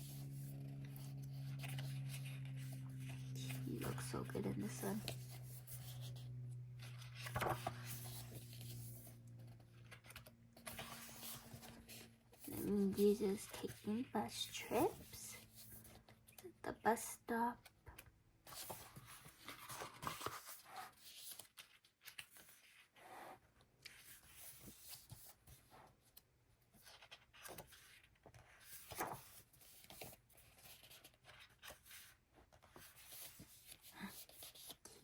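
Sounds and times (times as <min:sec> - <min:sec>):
book pages turning: 0:00.0 - 0:16.1, 0:17.6 - 0:23.1, 0:23.8 - 0:26.2, 0:26.8 - 0:35.0.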